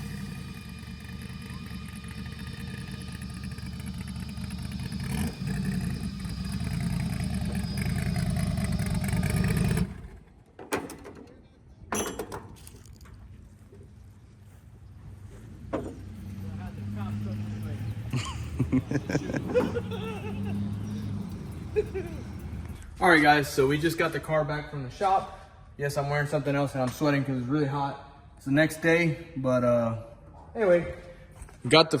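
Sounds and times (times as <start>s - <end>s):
car engine running: 0.0s - 10.3s, 15.0s - 22.8s.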